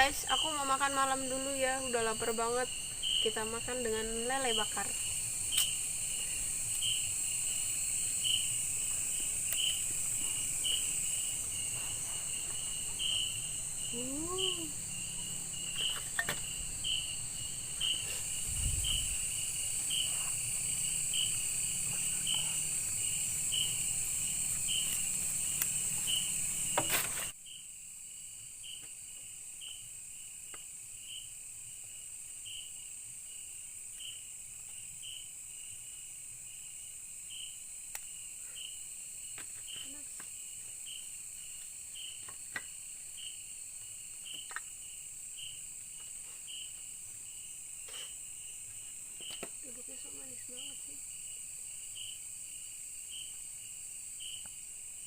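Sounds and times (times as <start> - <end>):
insect shrill drone: 0.0 - 28.8
insect chirping: 0.0 - 55.0.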